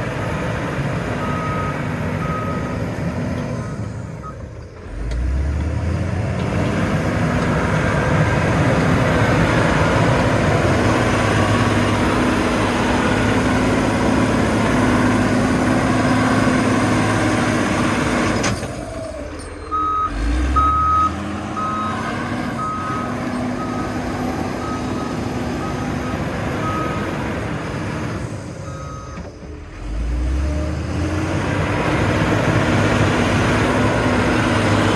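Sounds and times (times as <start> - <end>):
heavy vehicle engine running: 0.0 - 34.9
reversing alarm beeping: 1.2 - 2.8, 9.7 - 27.8, 28.6 - 29.2.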